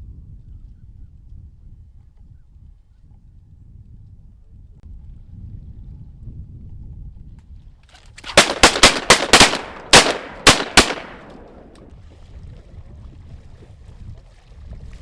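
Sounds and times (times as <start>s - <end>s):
wind rumble: 0.0s - 15.0s
shotgun blasts: 8.2s - 11.9s.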